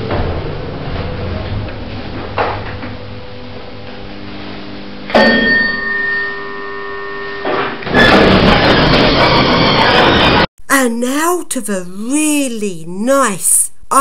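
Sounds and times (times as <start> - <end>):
lift arrival chime: 5.2 - 7.6.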